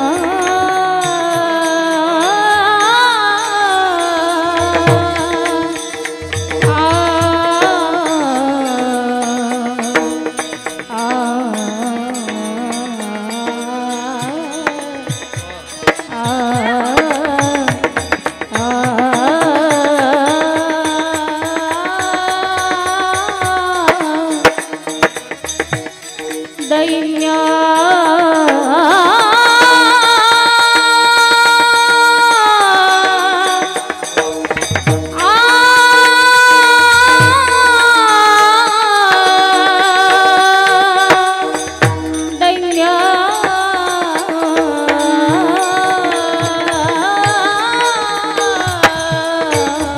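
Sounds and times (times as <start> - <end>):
person singing long ornamented notes: 0.0 - 25.0, 26.5 - 49.9
rhythmic percussion: 0.0 - 49.9
hand-drum strokes: 3.6 - 49.9.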